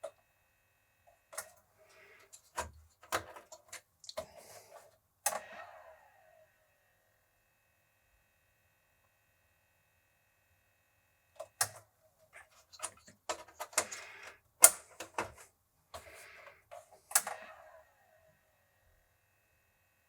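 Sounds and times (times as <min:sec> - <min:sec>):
computer hardware clicks and knocks: 0:02.2 - 0:04.3, 0:12.4 - 0:16.1.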